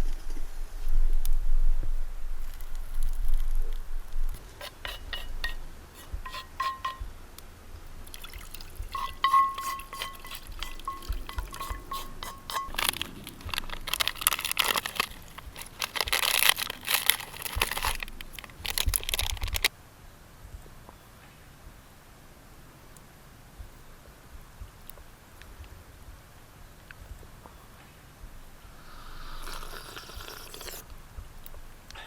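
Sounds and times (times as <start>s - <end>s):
liquid pouring: 8.0s - 17.1s, 28.9s - 30.8s
light ringing clinks: 8.9s - 13.1s.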